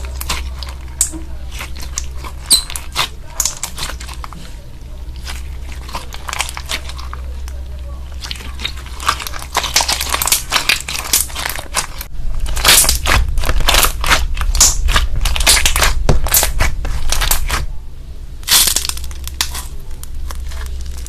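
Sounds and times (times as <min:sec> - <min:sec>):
slime crackling and popping: 0:00.0 - 0:04.4, 0:05.1 - 0:17.7, 0:18.4 - 0:21.0.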